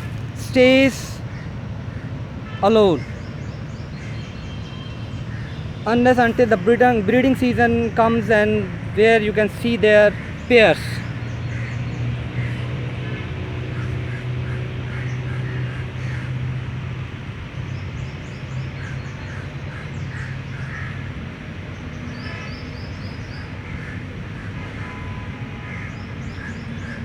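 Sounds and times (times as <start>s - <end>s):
low engine hum: 0.0s - 3.2s
birds chirping: 0.0s - 27.0s.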